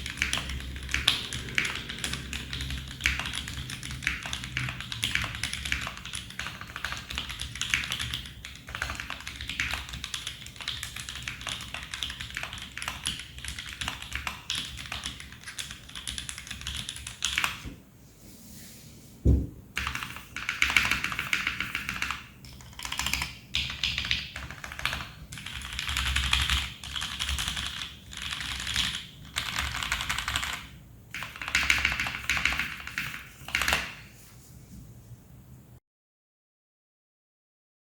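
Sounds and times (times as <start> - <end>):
mechanical keyboard typing: 0.0 - 17.6, 19.8 - 34.0
low thump: 19.2 - 19.6.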